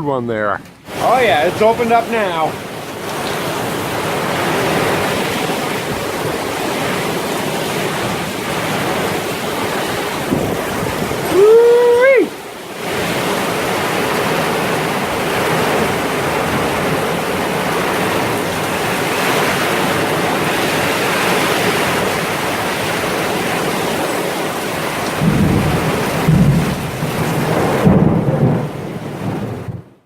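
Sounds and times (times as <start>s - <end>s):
heavy rain pouring: 0.8s - 30.0s
low thunder rumbles: 3.8s - 11.6s, 24.8s - 30.0s.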